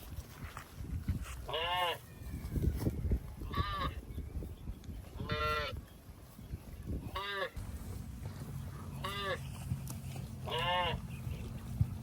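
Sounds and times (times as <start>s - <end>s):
low uneven rumble: 7.6s - 12.0s
cattle mooing: 10.4s - 11.0s.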